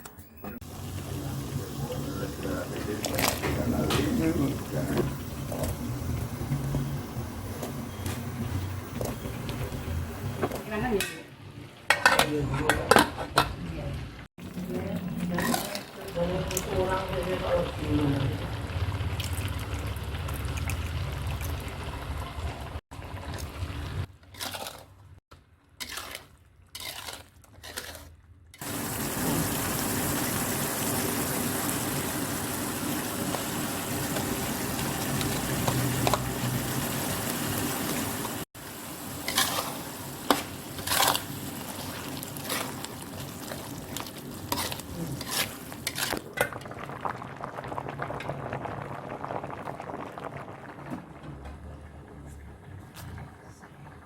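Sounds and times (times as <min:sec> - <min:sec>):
liquid pouring and stirring: 0:25.8 - 0:28.7.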